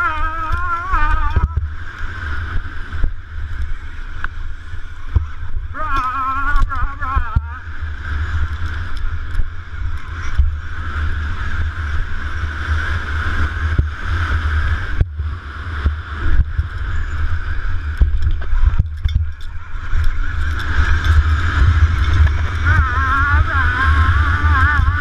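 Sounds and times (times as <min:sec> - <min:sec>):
electric motorbike whine: 0:00.0 - 0:25.0
wind rumble on microphone: 0:00.0 - 0:25.0.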